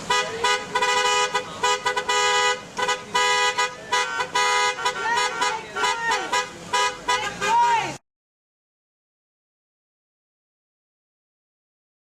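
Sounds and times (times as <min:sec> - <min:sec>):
car horns honking: 0:00.0 - 0:08.0.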